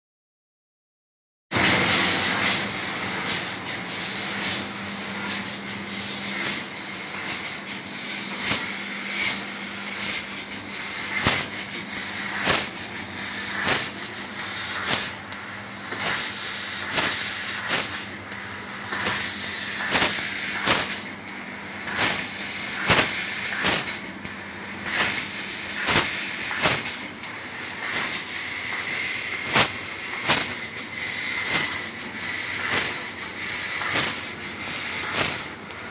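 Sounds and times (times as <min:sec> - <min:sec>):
laser cutter hiss: 0:01.6 - 0:35.9
sharp pops: 0:12.3 - 0:12.8, 0:13.6 - 0:14.2, 0:14.8 - 0:24.0, 0:24.8 - 0:27.0, 0:29.4 - 0:30.6.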